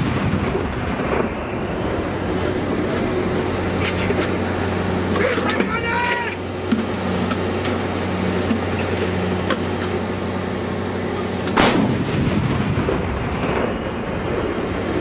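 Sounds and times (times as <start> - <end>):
artillery gun blast: 0.0 - 2.2, 11.4 - 14.5
steady low hum: 0.0 - 15.0.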